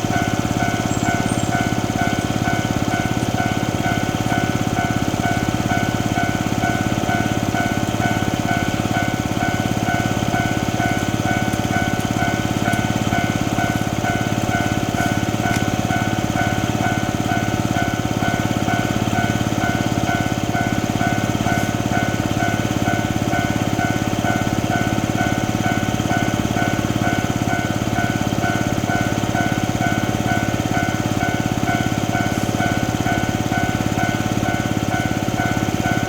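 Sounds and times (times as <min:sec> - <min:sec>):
level-crossing alarm bell: 0:00.0 - 0:36.0
steady low rumble: 0:07.6 - 0:18.9.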